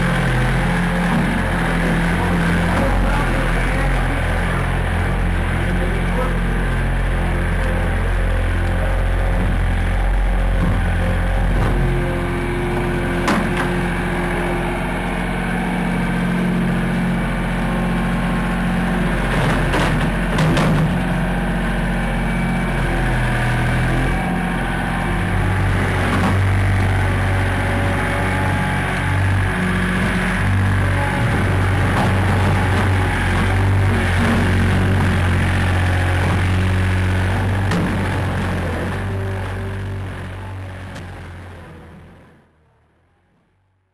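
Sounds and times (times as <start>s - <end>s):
skid steer loader engine: 0.0s - 43.9s
sharp knocks: 10.5s - 12.1s, 13.2s - 14.0s, 19.3s - 21.2s, 31.2s - 39.2s.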